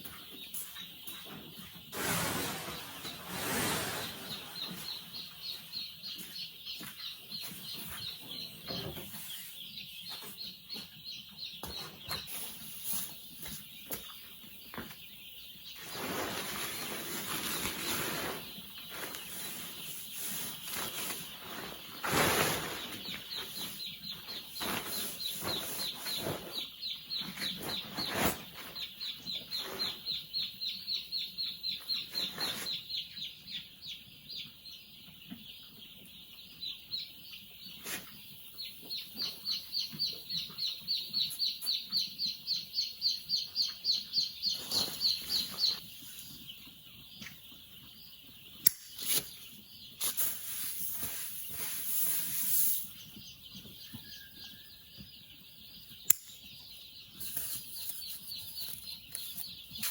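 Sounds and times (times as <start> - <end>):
chickens calling: 0.0 - 59.9
rustling and wing-flapping: 15.8 - 26.7.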